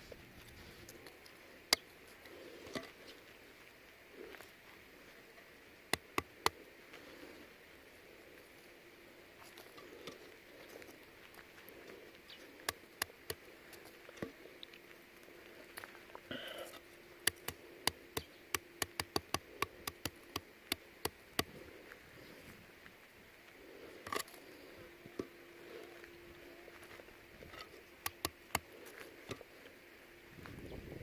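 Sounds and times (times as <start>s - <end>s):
faint steady hum: 0.0s - 31.0s
nuts crackling and popping: 5.8s - 6.6s, 9.6s - 22.0s, 27.7s - 29.7s.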